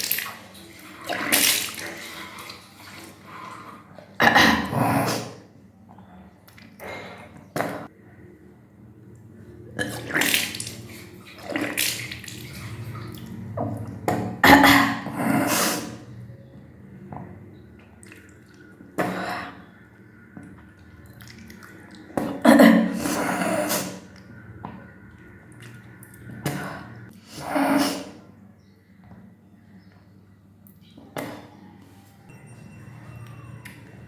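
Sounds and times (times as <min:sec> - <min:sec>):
water splashing out: 0:00.0 - 0:03.8, 0:09.8 - 0:14.4
person retching and gagging: 0:04.2 - 0:05.3, 0:09.8 - 0:10.7, 0:14.4 - 0:16.0, 0:22.1 - 0:24.0.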